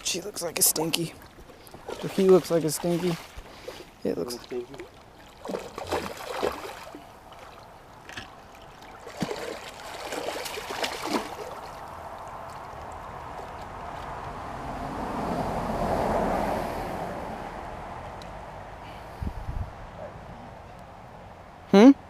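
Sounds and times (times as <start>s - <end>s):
rushing water noise: 0.0s - 19.1s
river water splashing and trickling: 0.0s - 21.7s.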